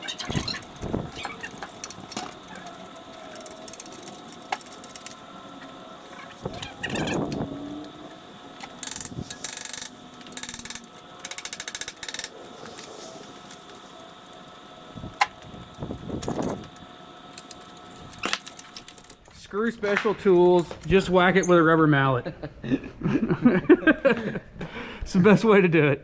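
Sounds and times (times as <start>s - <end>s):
ratchet clicking: 0.0s - 19.2s.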